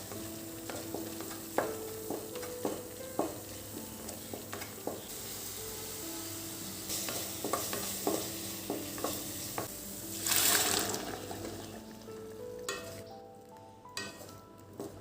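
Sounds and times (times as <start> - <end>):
hissing sizzle: 0.0 - 15.0
soft background music: 0.0 - 15.0
utensil knocking against pan: 0.7 - 5.1, 6.9 - 9.7.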